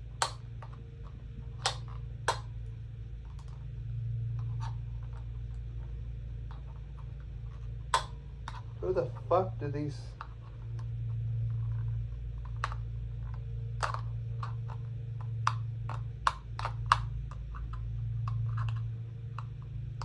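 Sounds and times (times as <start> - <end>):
steady low hum: 0.0 - 20.0
plastic calculator clicks and taps: 0.2 - 0.8, 1.6 - 2.5, 7.9 - 8.7, 12.4 - 19.5.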